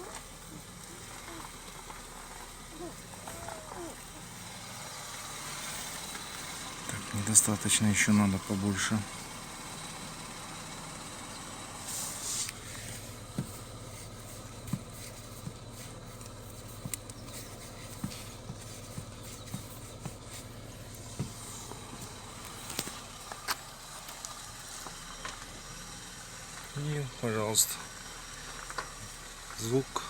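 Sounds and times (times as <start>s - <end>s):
car engine idling: 0.0s - 30.0s
clicks at steering wheel: 14.6s - 24.4s.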